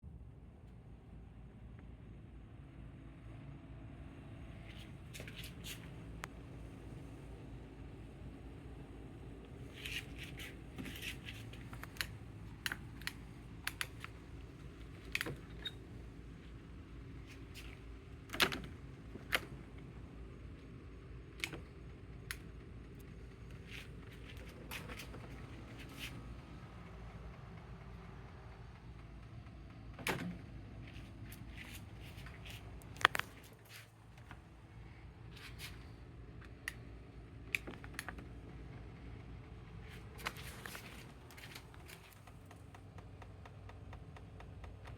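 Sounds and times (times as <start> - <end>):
lawnmower clicking: 40.1 - 44.9.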